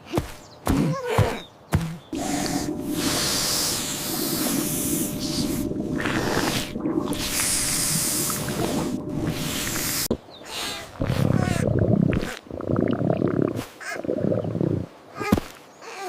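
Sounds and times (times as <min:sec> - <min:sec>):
snake hissing: 0:02.1 - 0:12.4.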